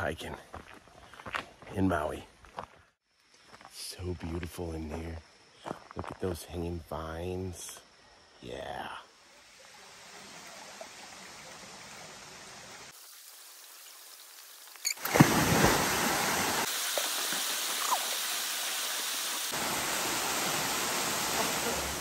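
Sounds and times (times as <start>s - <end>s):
stream and waterfall rushing: 14.8s - 22.0s.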